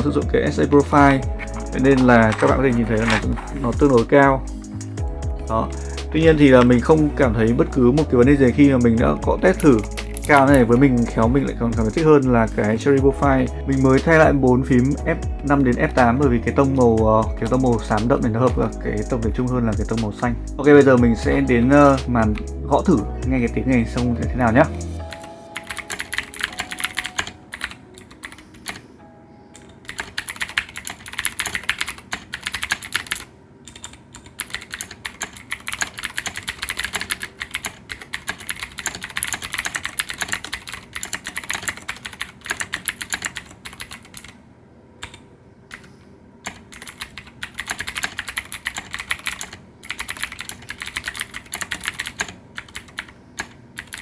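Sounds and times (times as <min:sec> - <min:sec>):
mechanical keyboard clicks: 0:01.1 - 0:04.0, 0:25.1 - 0:28.8, 0:29.6 - 0:44.4, 0:45.0 - 0:54.0.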